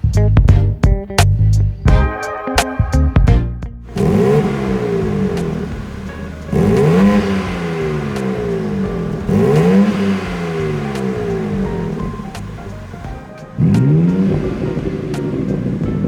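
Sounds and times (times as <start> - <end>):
car engine revving: 3.8 - 16.0.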